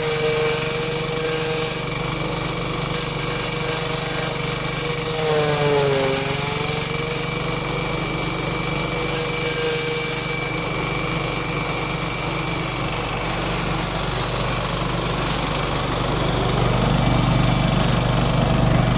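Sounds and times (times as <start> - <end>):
farm machine engine running: 0.0 - 18.9.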